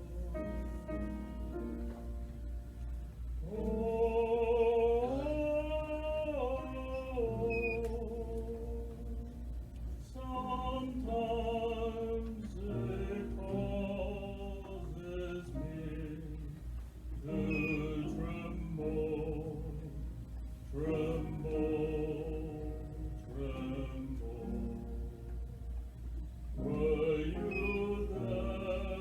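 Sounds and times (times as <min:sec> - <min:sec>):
steady low hum: 0:00.0 - 0:29.0
choir singing: 0:03.4 - 0:08.9, 0:10.2 - 0:16.2, 0:17.2 - 0:19.9, 0:20.8 - 0:25.1, 0:26.6 - 0:29.0.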